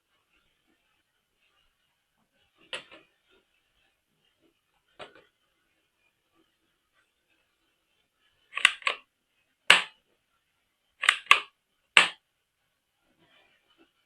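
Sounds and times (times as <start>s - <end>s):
sharp clicks of toy parts: 8.6s - 9.0s, 11.0s - 12.2s.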